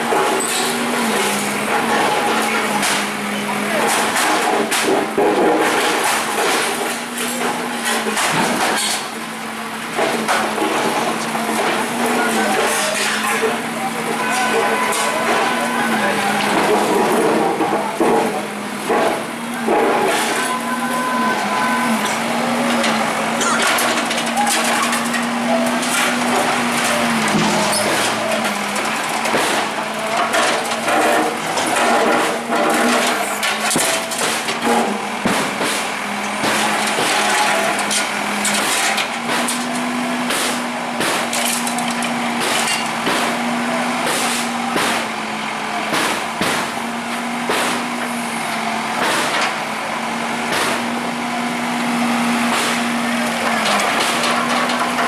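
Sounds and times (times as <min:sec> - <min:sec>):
bulldozer engine under load: 0:00.0 - 0:55.0
debris cracking and falling: 0:03.8 - 0:09.2, 0:21.3 - 0:35.6, 0:36.2 - 0:40.0, 0:40.6 - 0:43.2, 0:52.7 - 0:55.0.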